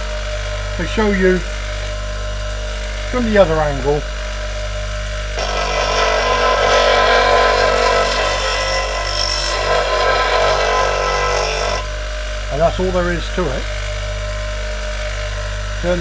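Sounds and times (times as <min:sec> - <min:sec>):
bench grinder humming: 0:05.3 - 0:12.1, 0:12.9 - 0:16.0
steel grinding on wheel: 0:05.4 - 0:12.0.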